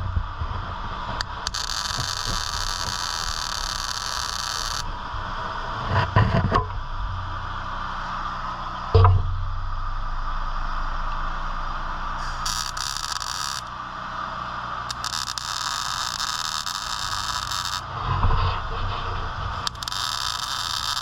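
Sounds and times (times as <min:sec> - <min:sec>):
low machine hum: 0:00.0 - 0:21.0
welding arc crackling: 0:01.2 - 0:05.0, 0:12.2 - 0:13.8, 0:14.9 - 0:18.0, 0:19.5 - 0:21.0.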